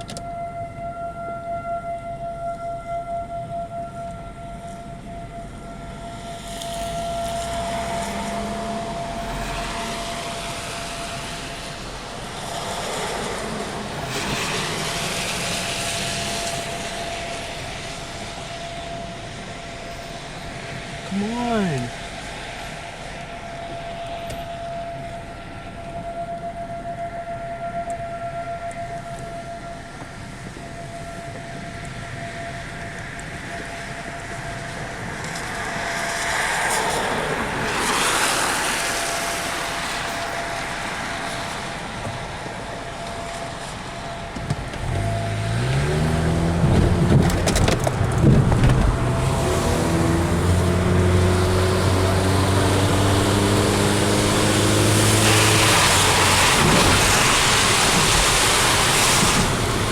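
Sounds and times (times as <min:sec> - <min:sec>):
car engine droning: 0:00.0 - 0:59.9
faint outdoor siren: 0:00.0 - 0:59.9
traffic noise: 0:00.0 - 0:59.9.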